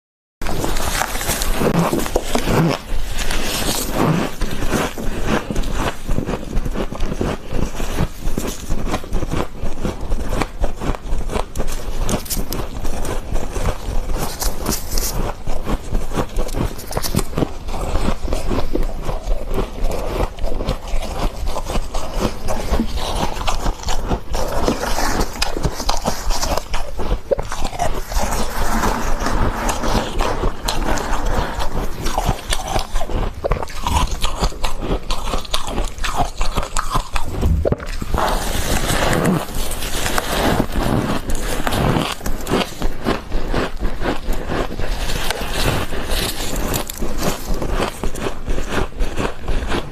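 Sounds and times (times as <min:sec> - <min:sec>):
chewing crunchy frost: 0:00.4 - 0:49.9
scraping: 0:24.5 - 0:34.0, 0:37.2 - 0:42.1.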